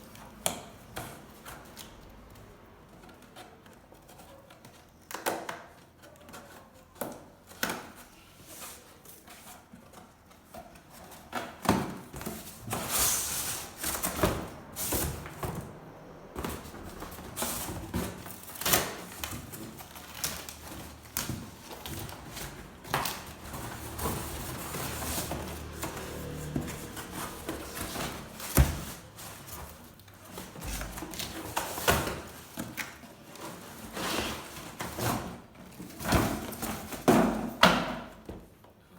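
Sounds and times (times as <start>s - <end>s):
packaging rustling and tearing: 16.5s - 37.4s.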